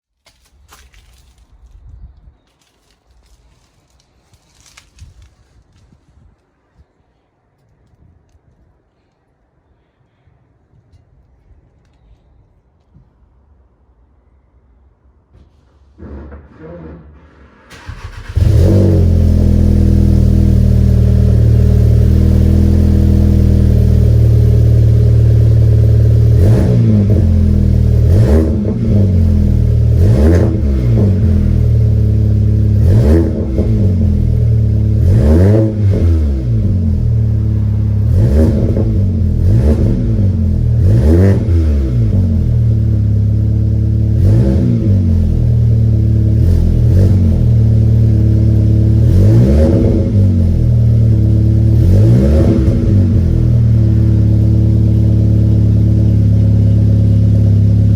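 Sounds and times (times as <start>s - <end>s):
car engine idling: 15.6s - 35.2s, 35.8s - 41.5s, 45.0s - 57.9s
engine revving in throttle blips: 15.9s - 57.9s.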